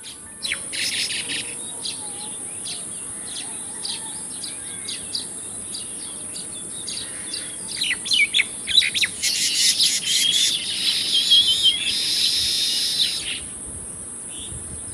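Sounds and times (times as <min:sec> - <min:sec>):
steady high hiss: 0:00.0 - 0:03.5, 0:04.2 - 0:14.9
weaver birds chirping: 0:00.0 - 0:13.5.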